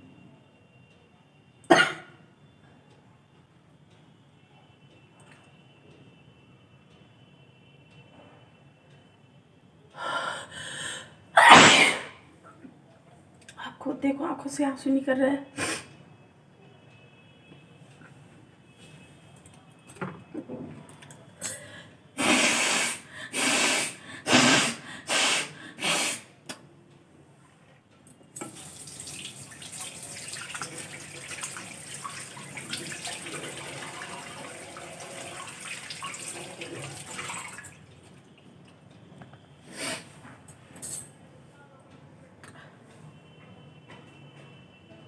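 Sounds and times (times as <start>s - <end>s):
person blowing nose: 22.2s - 26.3s, 39.6s - 40.2s
tap running into basin: 28.4s - 38.2s.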